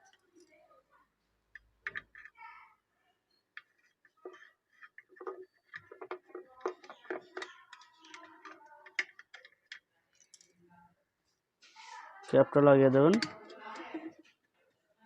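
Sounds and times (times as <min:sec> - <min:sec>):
hands handling plastic parts: 0:01.6 - 0:02.4, 0:03.5 - 0:10.6, 0:12.4 - 0:14.5.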